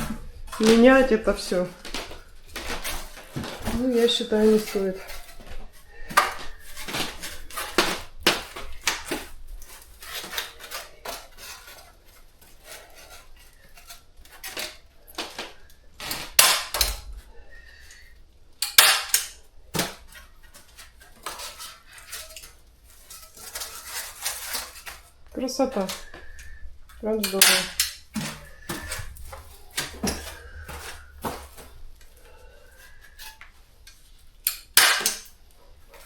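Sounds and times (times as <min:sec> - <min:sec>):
knocks and light clattering: 0:00.0 - 0:17.2.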